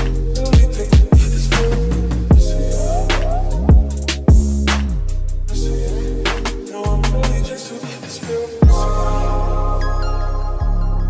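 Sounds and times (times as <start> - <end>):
hip hop music with drum beat: 0.0 - 9.7.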